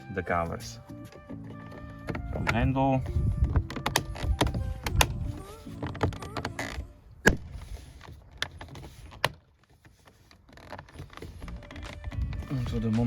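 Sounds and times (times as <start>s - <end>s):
plastic handling rattle: 1.1s - 6.6s, 7.5s - 13.0s
plastic clips snapping: 3.6s - 5.2s.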